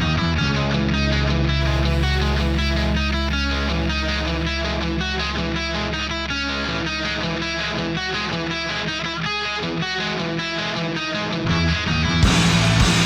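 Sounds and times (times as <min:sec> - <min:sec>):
low sustained tone: 0:01.6 - 0:07.4
electric guitar riff: 0:01.6 - 0:08.1, 0:12.2 - 0:13.0
rock band playing: 0:12.2 - 0:13.0.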